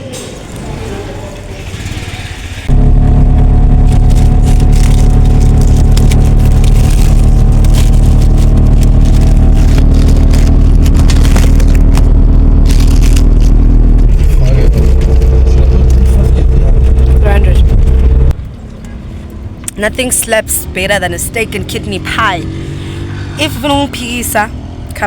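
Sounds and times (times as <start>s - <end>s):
vehicle engine drone: 1.4s - 25.0s
rattles and scrapes: 1.6s - 18.4s.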